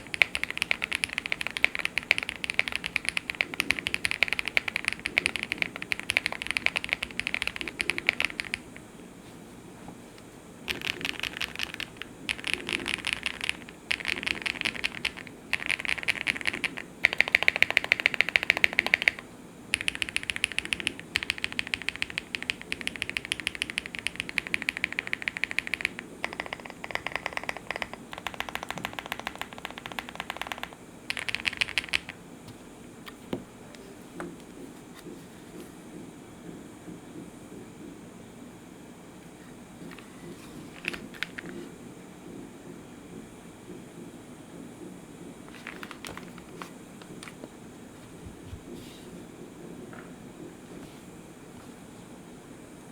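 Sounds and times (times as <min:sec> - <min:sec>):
mechanical keyboard typing: 0:00.0 - 0:08.9, 0:10.7 - 0:32.2, 0:40.7 - 0:41.6, 0:45.5 - 0:47.4.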